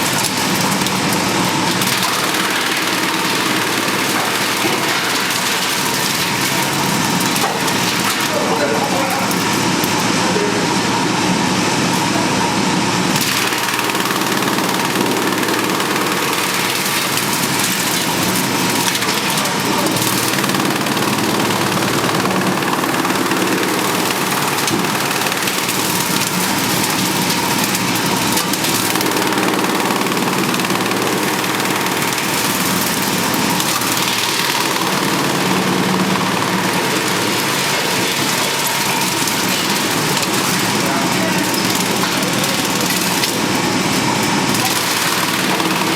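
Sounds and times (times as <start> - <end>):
wood chipper running: 0.0 - 45.9.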